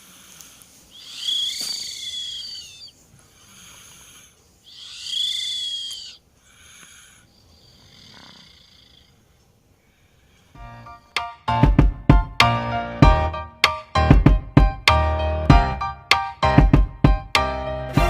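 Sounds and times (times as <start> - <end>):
soft breathing: 0.0 - 10.6
child snoring with whistle: 1.0 - 2.9, 3.5 - 9.2.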